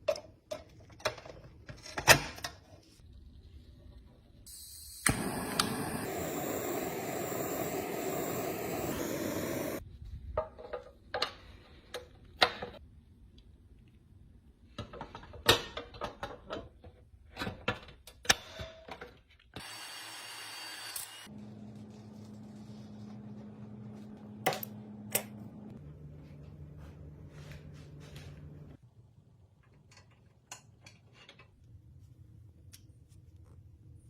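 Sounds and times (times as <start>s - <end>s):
power tool running: 19.6s - 21.3s.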